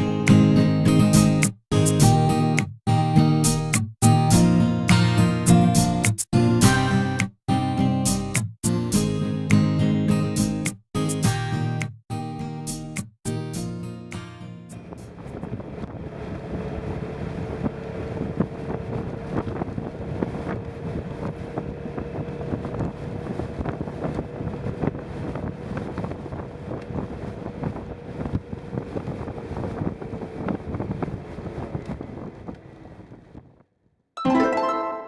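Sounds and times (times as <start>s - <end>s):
wind buffeting microphone: 14.8s - 33.7s.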